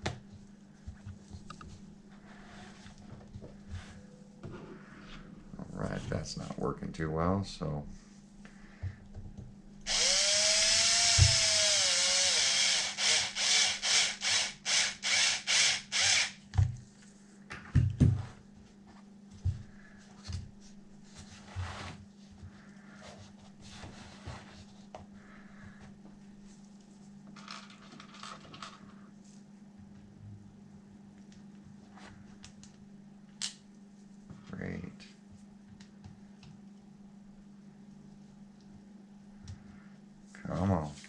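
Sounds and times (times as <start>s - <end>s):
power drill running: 9.9s - 16.4s.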